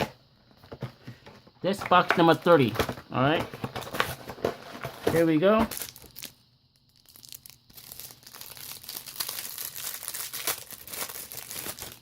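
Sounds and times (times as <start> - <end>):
packaging crinkling and tearing: 5.1 - 12.0.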